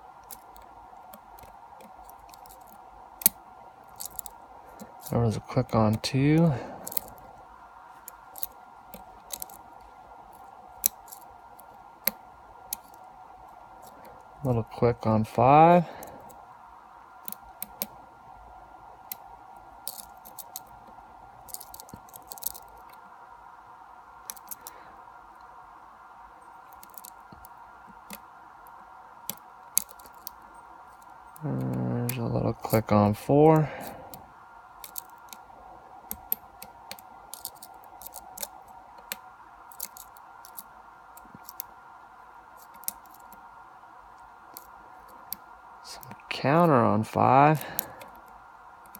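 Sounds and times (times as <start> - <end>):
faint steady hum: 0.0 - 48.9
lock pick clicking pins: 0.3 - 5.2, 8.0 - 9.6, 21.4 - 23.0, 26.7 - 27.4, 29.3 - 30.4, 34.8 - 35.4, 36.1 - 41.7, 42.6 - 43.4.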